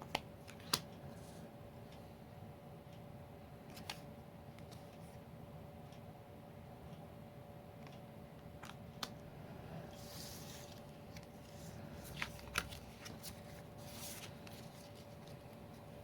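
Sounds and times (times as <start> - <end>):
cards sliding and rustling: 9.9 - 16.0.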